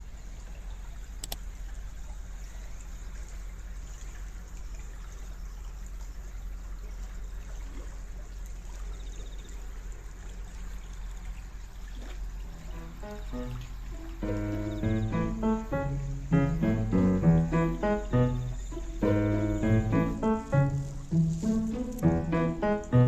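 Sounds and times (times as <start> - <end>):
water flowing in a canal: 0.0 - 23.0
sharp click: 1.2 - 1.4.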